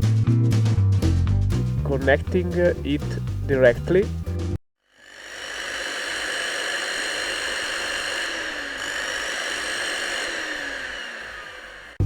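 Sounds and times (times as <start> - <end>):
vacuum cleaner motor whining: 5.0 - 12.0.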